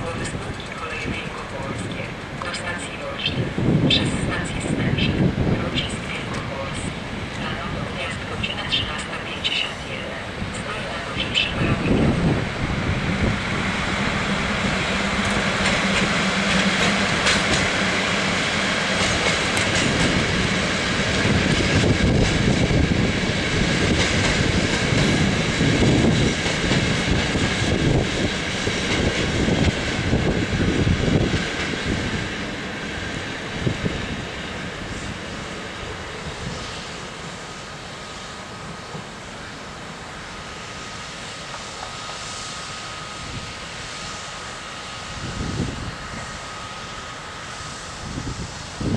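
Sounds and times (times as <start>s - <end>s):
train wheels clacking over rail joints: 15.2s - 22.5s.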